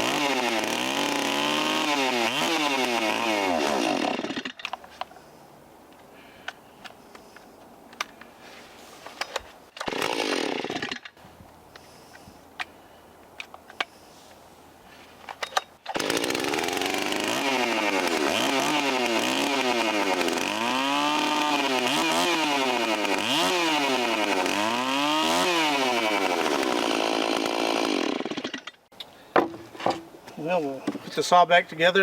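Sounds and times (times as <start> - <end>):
chainsaw engine running: 0.0 - 4.5, 9.9 - 10.8, 15.9 - 28.6.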